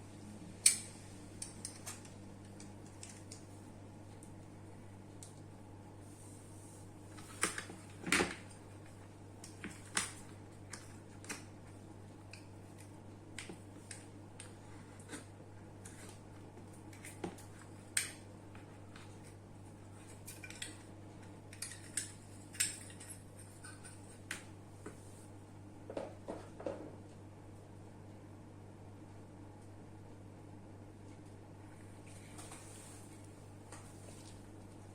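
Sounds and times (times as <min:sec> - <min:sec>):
steady low hum: 0:00.0 - 0:34.9
small parts and tools clicking: 0:00.6 - 0:03.4.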